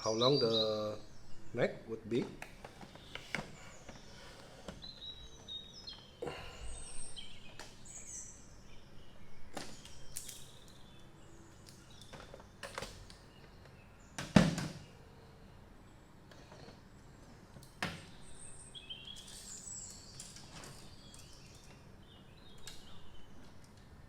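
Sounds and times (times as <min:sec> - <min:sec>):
birds chirping faintly: 0:00.0 - 0:24.0.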